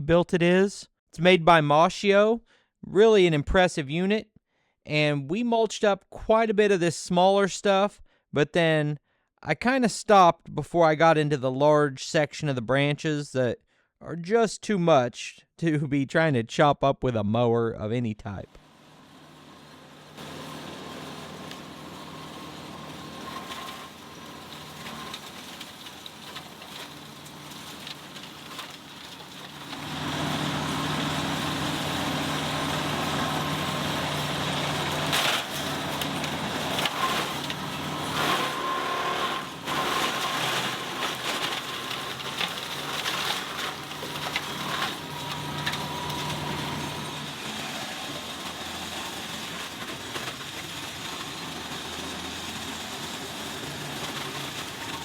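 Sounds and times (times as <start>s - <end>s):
tractor mower running: 18.6s - 55.0s
branches cracking being shredded: 20.2s - 47.5s.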